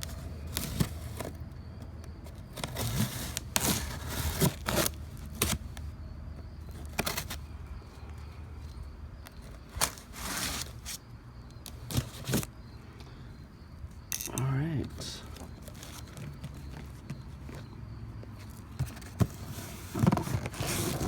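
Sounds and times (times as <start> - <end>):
cardboard tearing and rustling: 2.6 - 5.7, 19.1 - 21.0.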